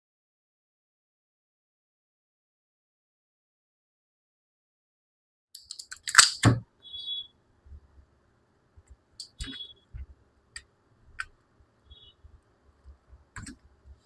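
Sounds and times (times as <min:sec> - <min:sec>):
tools clicking on plastic parts: 0:05.6 - 0:06.6.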